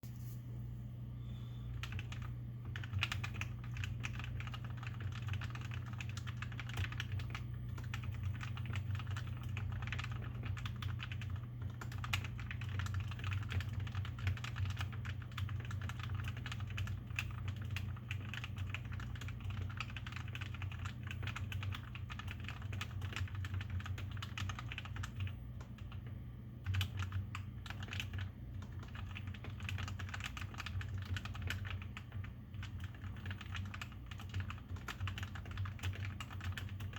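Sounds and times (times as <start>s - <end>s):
steady low hum: 0.0s - 36.9s
typing on mechanical keyboard: 1.7s - 36.9s.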